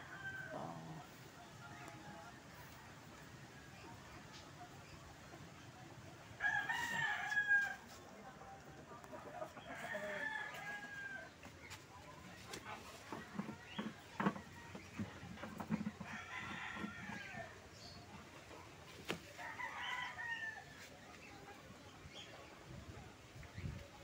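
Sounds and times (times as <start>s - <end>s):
rooster crowing: 6.4s - 7.8s.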